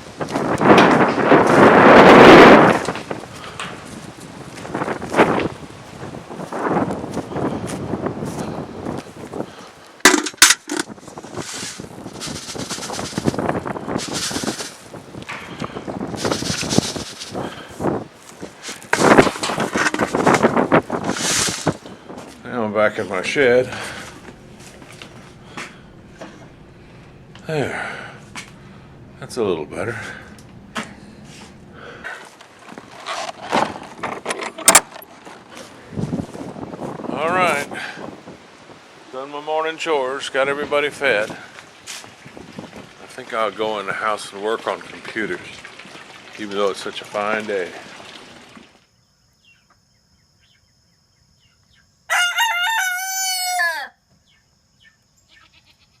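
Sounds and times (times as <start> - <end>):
rooster crowing: 52.1 - 54.0.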